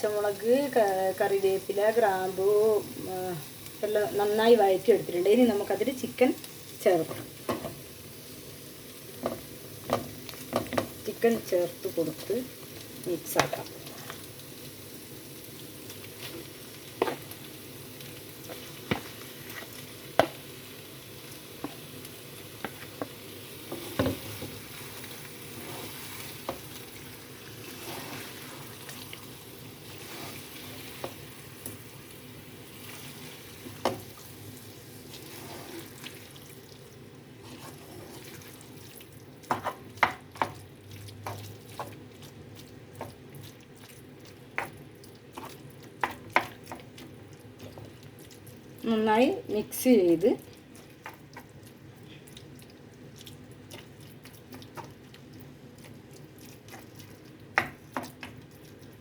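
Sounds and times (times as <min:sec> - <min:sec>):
chicken sizzling in a pan: 0:00.0 - 0:59.0
spoon scraping and knocking pan: 0:07.0 - 0:07.8, 0:09.2 - 0:11.5, 0:16.2 - 0:17.4, 0:18.5 - 0:20.4, 0:22.6 - 0:24.6, 0:39.5 - 0:40.6, 0:57.6 - 0:58.4.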